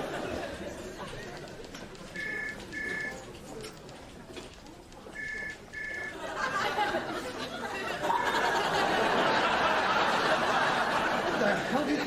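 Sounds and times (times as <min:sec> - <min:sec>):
people laughing: 0:00.0 - 0:01.5, 0:06.1 - 0:12.0
crowd chattering: 0:00.0 - 0:12.0
short electronic beeps: 0:02.2 - 0:03.2, 0:05.2 - 0:06.1.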